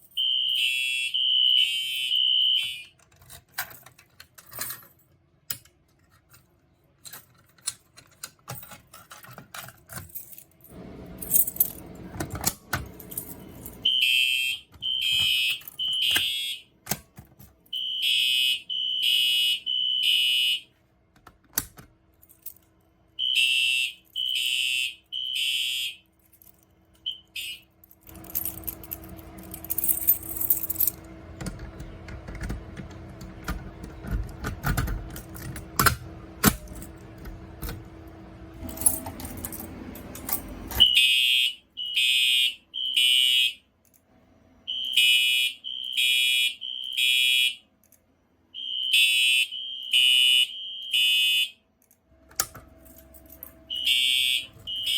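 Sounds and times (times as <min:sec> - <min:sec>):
fire alarm horn blasts: 0:00.0 - 0:03.0, 0:13.4 - 0:16.8, 0:17.7 - 0:20.8, 0:23.2 - 0:26.1, 0:27.0 - 0:28.7, 0:40.8 - 0:43.7, 0:44.6 - 0:47.7, 0:48.5 - 0:51.6, 0:53.4 - 0:54.9
alarm chirp: 0:00.1 - 0:02.9, 0:13.8 - 0:16.7, 0:17.7 - 0:20.6, 0:23.2 - 0:26.0, 0:27.0 - 0:27.7, 0:40.8 - 0:43.6, 0:44.7 - 0:47.6, 0:48.6 - 0:51.6, 0:53.7 - 0:54.9
clicks and rattles: 0:03.0 - 0:10.4.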